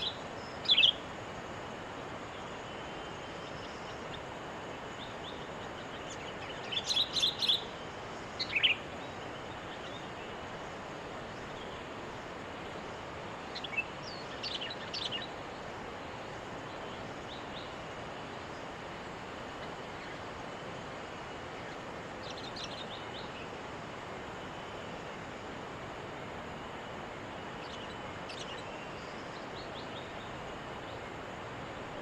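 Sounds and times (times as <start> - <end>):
bird chirping: 0.0 - 1.1, 4.9 - 11.9, 12.6 - 15.6, 21.1 - 23.6, 27.6 - 31.1
steady background hiss: 0.0 - 32.0.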